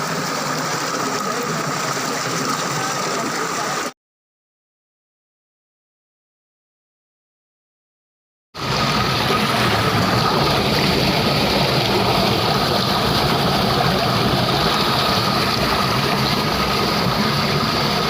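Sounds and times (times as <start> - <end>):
running water rushing: 0.0 - 3.9, 8.6 - 18.0.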